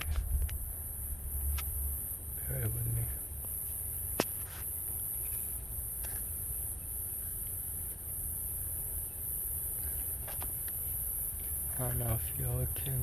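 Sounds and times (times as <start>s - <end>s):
low rumble: 0.0s - 2.0s.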